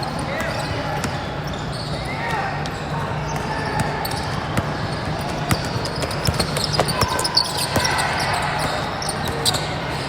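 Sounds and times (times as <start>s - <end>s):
low hum of hall: 0.0s - 10.0s
basketball bouncing on gym floor: 4.5s - 9.6s.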